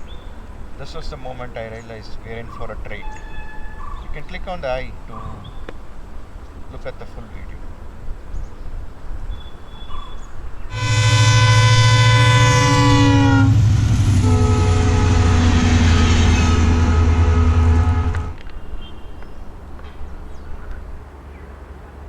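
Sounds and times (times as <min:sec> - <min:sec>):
train horn blast: 0:02.9 - 0:04.0, 0:10.7 - 0:19.2
train passing at high speed: 0:10.7 - 0:21.0.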